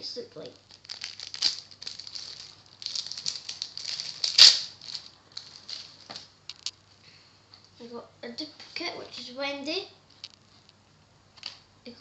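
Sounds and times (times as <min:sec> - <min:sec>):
wrapper crinkling: 0:00.4 - 0:06.8, 0:10.1 - 0:10.8
wrapper ripping: 0:00.5 - 0:06.7.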